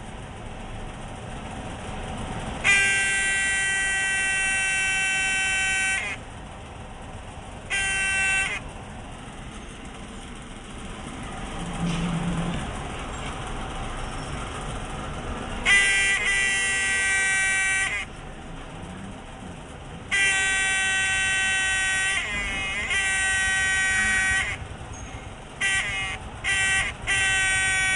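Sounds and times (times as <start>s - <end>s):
alarm buzzer: 2.7s - 6.3s, 7.7s - 8.7s, 15.6s - 18.1s, 20.1s - 27.9s.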